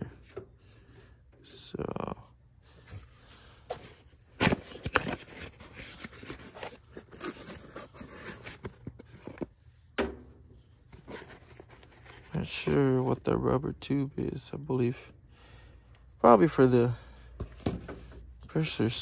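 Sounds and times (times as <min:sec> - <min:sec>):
hands handling parts: 0:02.8 - 0:13.3, 0:17.3 - 0:18.4.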